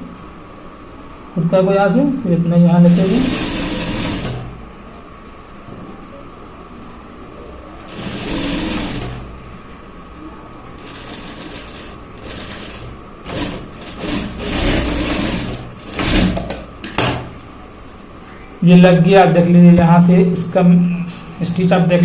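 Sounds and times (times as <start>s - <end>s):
sewing machine stitching: 2.8s - 4.6s, 7.9s - 9.3s, 10.8s - 16.7s.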